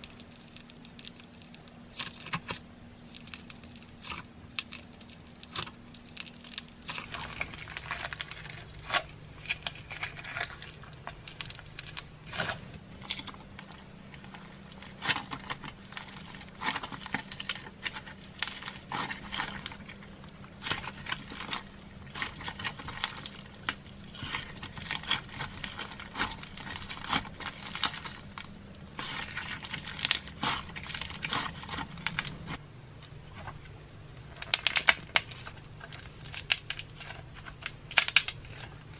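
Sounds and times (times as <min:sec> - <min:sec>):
faint steady hum: 0:00.0 - 0:38.9.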